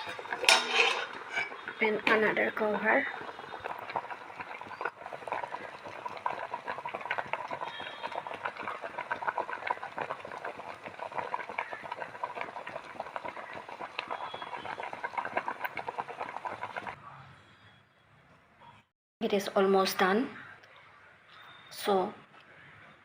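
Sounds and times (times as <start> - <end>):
water boiling hard: 0.0 - 17.0.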